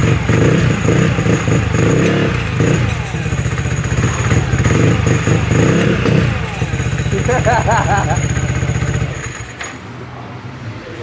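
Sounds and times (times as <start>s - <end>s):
scooter engine idling: 0.0s - 10.1s.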